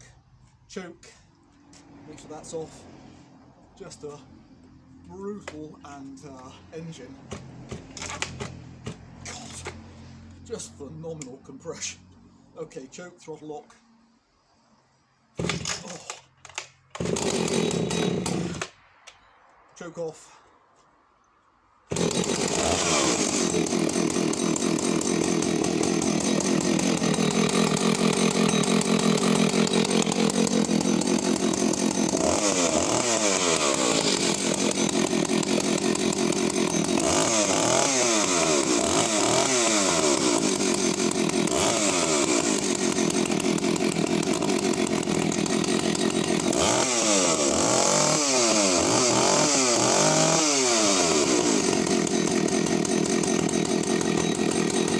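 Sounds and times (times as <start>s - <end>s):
chainsaw engine revving: 7.0s - 10.3s, 15.4s - 18.8s, 21.9s - 54.9s.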